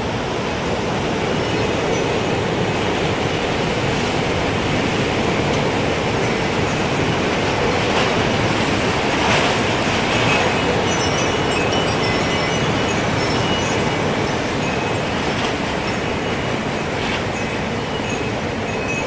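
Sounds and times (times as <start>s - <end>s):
gusting wind: 0.0s - 19.0s
wind chime tinkling: 0.9s - 3.9s, 5.3s - 8.5s, 10.2s - 19.0s.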